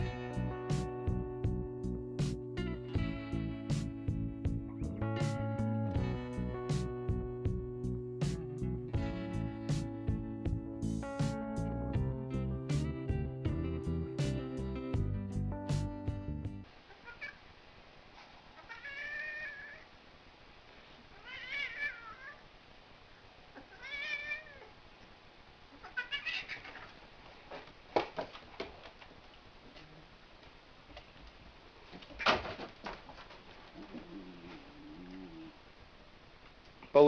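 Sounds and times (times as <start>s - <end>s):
cat meowing: 16.9s - 17.4s, 18.6s - 19.9s, 21.2s - 22.4s, 23.6s - 24.7s, 25.8s - 26.9s.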